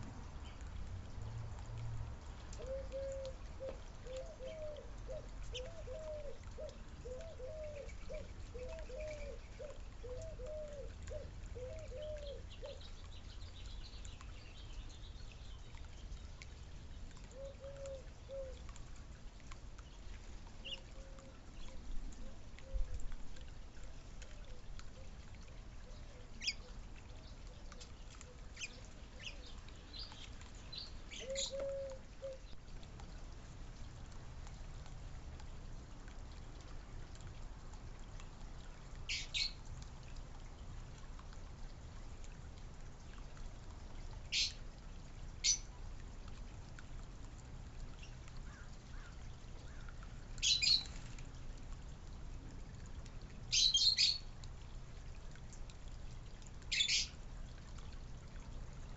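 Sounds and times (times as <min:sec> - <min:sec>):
low cooing bird calls: 0:02.5 - 0:13.1, 0:17.1 - 0:18.8, 0:20.4 - 0:32.6, 0:48.0 - 0:50.9, 0:53.5 - 0:54.2, 0:56.7 - 0:57.2.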